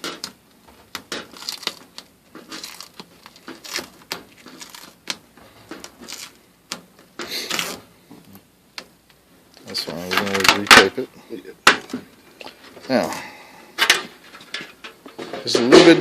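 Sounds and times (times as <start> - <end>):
tape tearing rasp: 0.0 - 8.4
tape being pulled off: 1.0 - 8.4.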